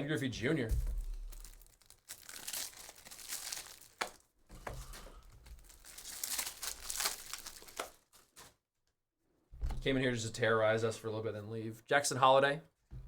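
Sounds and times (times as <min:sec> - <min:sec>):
foil wrappers crinkling: 0:00.9 - 0:08.6.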